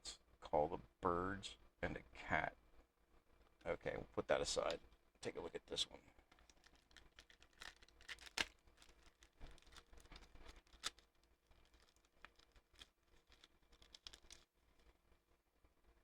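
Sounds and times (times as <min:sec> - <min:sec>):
paper cards and packaging rustling: 0:06.2 - 0:15.0.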